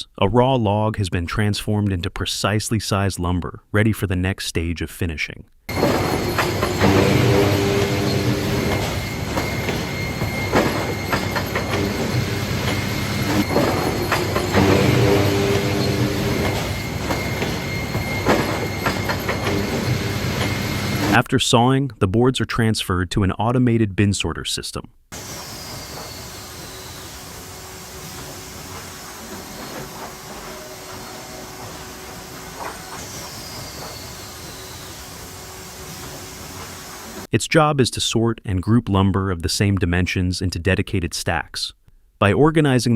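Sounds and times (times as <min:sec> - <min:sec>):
boards clattering on conveyors: 0:05.7 - 0:21.1, 0:28.0 - 0:35.0
high-pitched whine: 0:05.7 - 0:21.2, 0:25.2 - 0:37.3
machinery rumble and hum: 0:05.7 - 0:21.2, 0:25.2 - 0:37.3.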